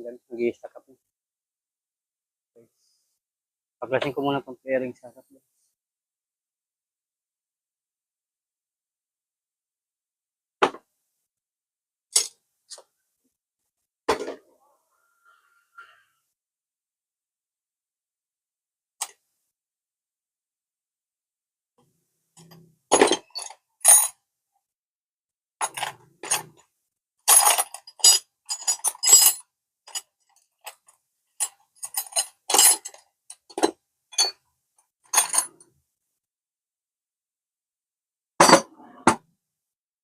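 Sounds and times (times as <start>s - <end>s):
tools and small parts clinking: 12.1s - 12.9s, 22.4s - 24.2s, 25.6s - 35.7s.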